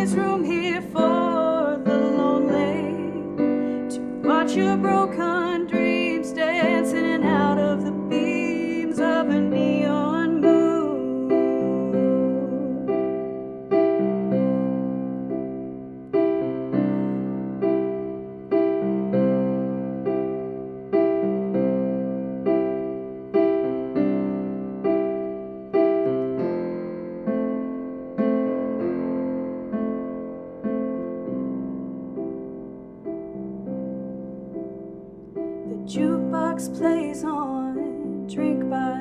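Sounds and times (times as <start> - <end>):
slow piano ballad: 0.0 - 39.0.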